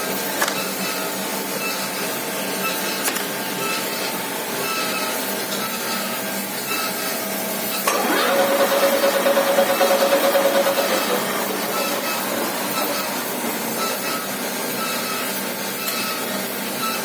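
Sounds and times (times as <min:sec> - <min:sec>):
milling machine whirring: 0:07.0 - 0:17.0
motor spinning up whine: 0:07.8 - 0:15.6.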